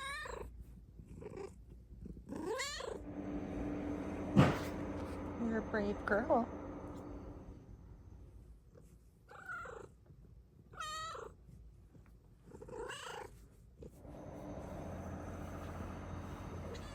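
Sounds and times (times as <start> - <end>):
cat purring: 0.2 - 10.0, 11.0 - 16.9
cat meowing: 16.6 - 16.9.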